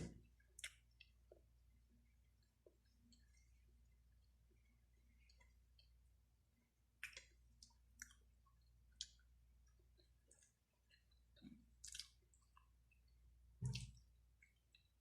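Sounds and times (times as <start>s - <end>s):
person chewing food: 7.0s - 15.0s.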